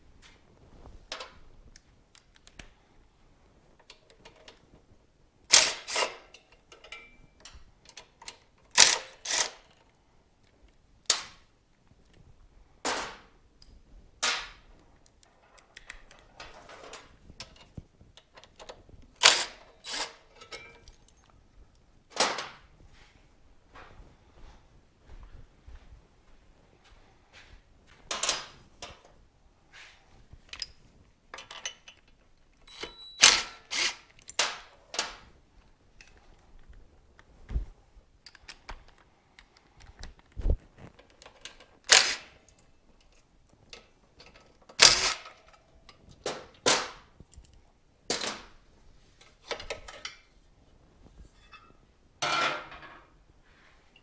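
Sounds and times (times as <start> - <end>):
metal tools clanking: 5.8 - 8.0, 19.2 - 21.3, 51.4 - 53.1.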